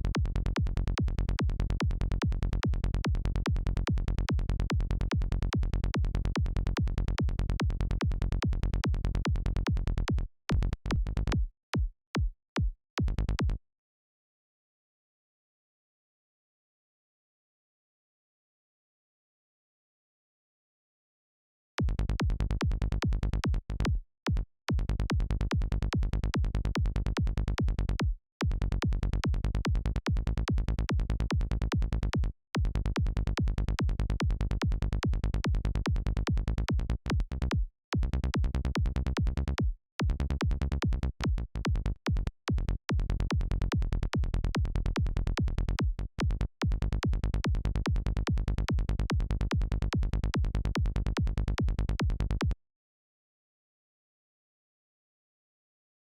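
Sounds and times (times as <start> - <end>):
rolling synth bassline: 0.0 - 11.4, 21.8 - 23.9, 24.8 - 52.6
kick drum: 0.0 - 13.6, 21.8 - 52.6.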